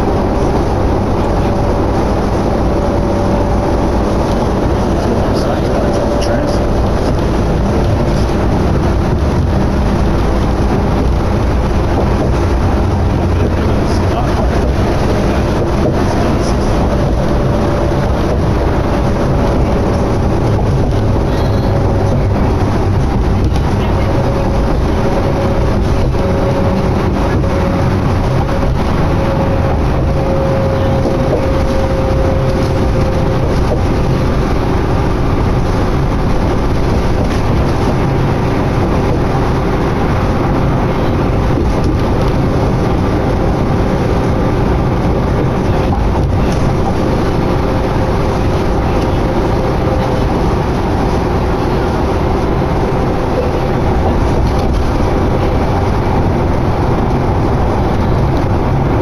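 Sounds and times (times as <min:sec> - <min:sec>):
bus engine and road drone: 0:00.0 - 0:59.0.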